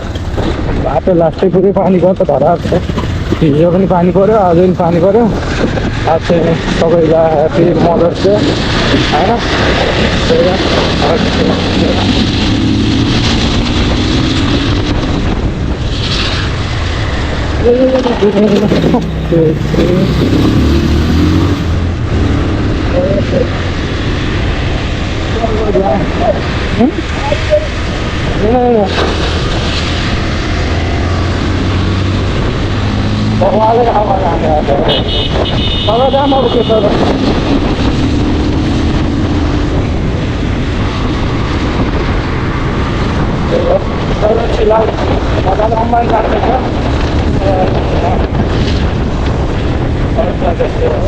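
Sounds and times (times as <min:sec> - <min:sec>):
motorcycle engine rumble: 0:00.0 - 0:01.4, 0:02.2 - 0:51.0
wind noise on microphone: 0:00.0 - 0:51.0
motorcycle engine running: 0:02.6 - 0:06.2.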